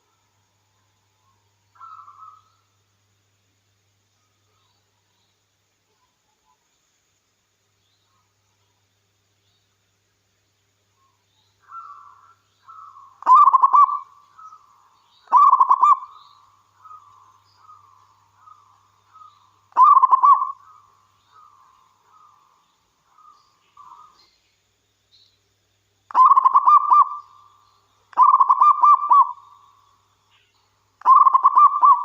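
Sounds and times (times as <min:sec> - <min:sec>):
dove cooing: 0:12.7 - 0:14.5, 0:15.3 - 0:16.2, 0:19.2 - 0:20.8, 0:26.1 - 0:27.2, 0:28.1 - 0:29.4, 0:31.0 - 0:32.0
loud trilled coos: 0:15.3 - 0:16.1, 0:19.7 - 0:20.6, 0:26.1 - 0:27.3, 0:28.1 - 0:29.5, 0:31.0 - 0:32.0.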